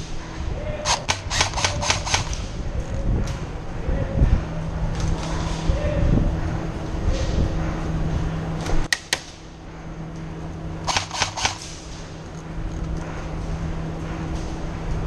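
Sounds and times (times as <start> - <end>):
airsoft gun shots: 0.8 - 2.5, 10.9 - 11.8.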